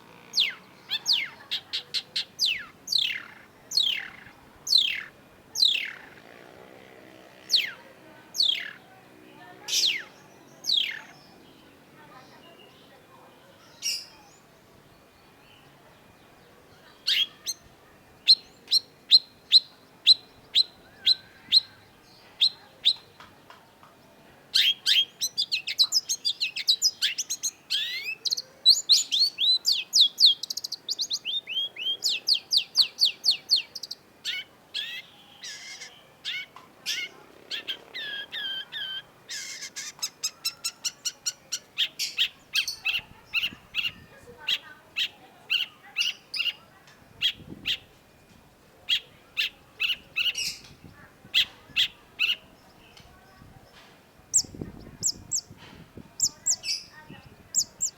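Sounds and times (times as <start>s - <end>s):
bird singing: 0.0s - 57.9s.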